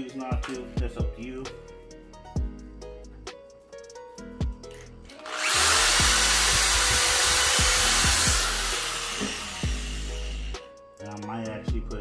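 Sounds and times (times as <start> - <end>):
background music with steady beat: 0.0 - 12.0
power drill driving screw into wood: 5.1 - 10.6.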